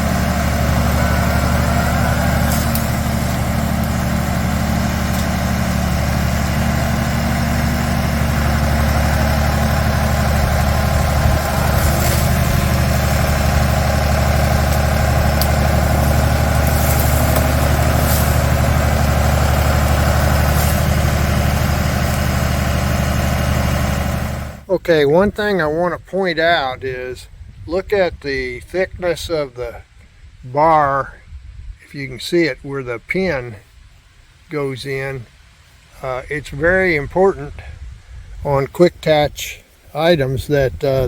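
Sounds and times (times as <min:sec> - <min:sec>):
skid steer loader engine: 0:00.0 - 0:25.3.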